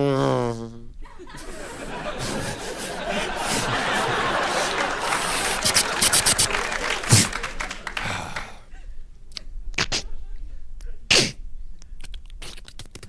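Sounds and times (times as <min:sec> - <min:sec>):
audience applause: 0:01.1 - 0:08.6.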